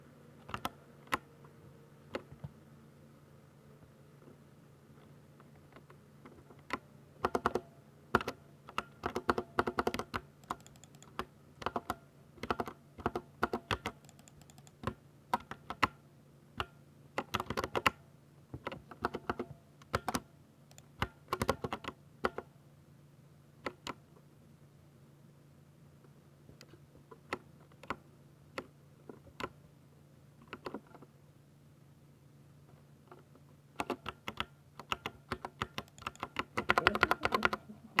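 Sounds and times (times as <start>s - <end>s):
mechanical keyboard typing: 0.4s - 1.2s, 5.7s - 16.0s, 16.6s - 18.0s, 18.6s - 22.5s, 33.8s - 38.0s.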